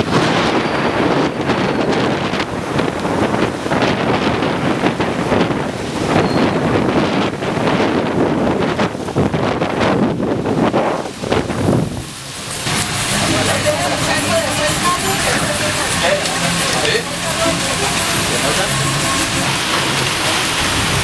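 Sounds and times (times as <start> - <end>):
hail and heavy rain pelting: 10.7 - 21.0.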